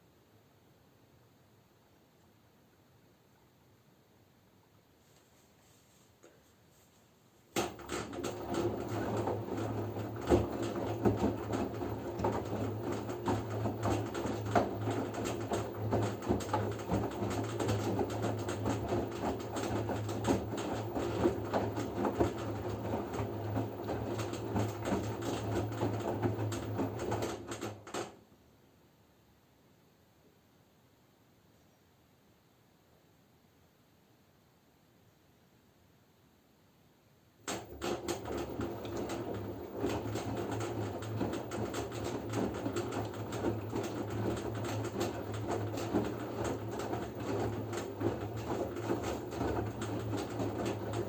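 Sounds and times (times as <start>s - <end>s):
laundry and water sloshing in drum: 7.6s - 27.6s, 37.6s - 51.0s
washing machine motor hum: 7.6s - 28.1s, 37.4s - 51.0s.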